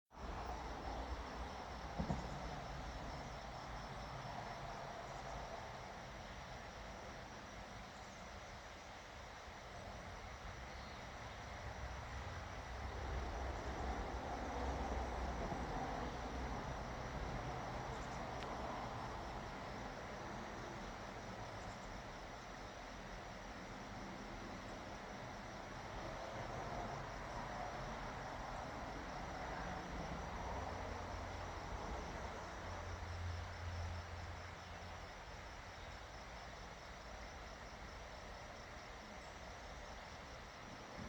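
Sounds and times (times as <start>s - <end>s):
insect trill: 0.1s - 41.0s
brief knock: 2.0s - 2.4s.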